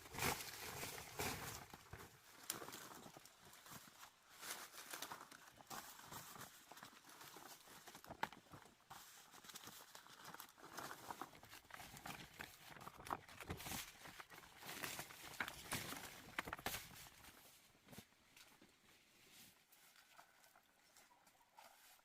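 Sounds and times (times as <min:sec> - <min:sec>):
leaves rustling and crinkling: 0:00.0 - 0:22.0.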